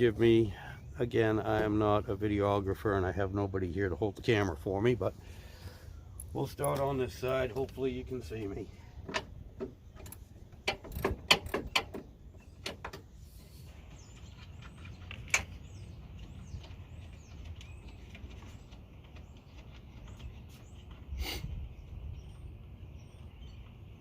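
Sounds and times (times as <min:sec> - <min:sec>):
birds chirping: 0:00.0 - 0:24.0
tools clicking and knocking: 0:09.1 - 0:13.1.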